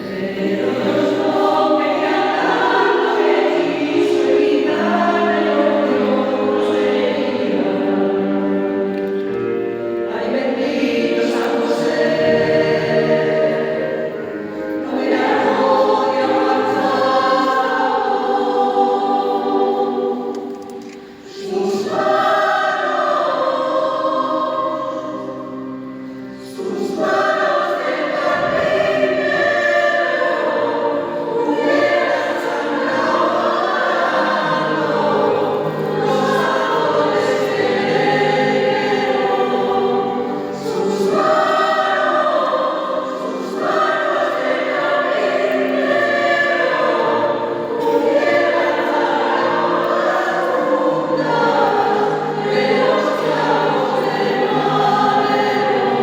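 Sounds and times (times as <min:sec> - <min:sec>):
choir singing sacred song: 0:00.0 - 0:56.0.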